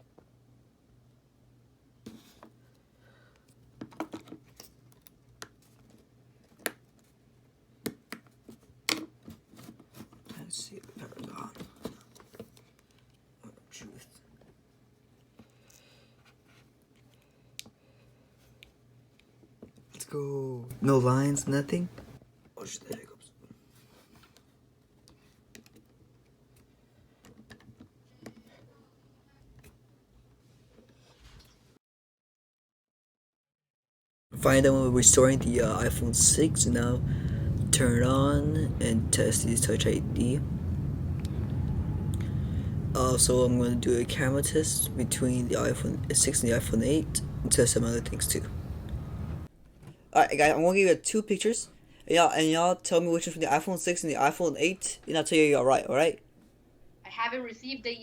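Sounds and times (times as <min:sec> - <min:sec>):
faint low hum: 0:34.4 - 0:50.7.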